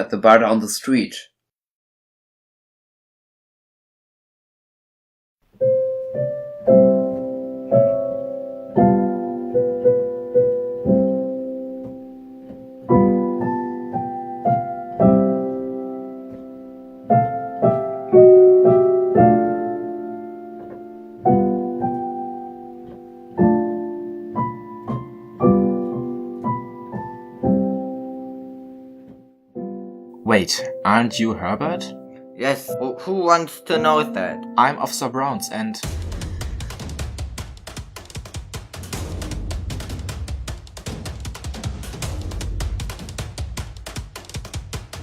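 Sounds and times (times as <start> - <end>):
slow calm solo piano: 5.5 - 30.9.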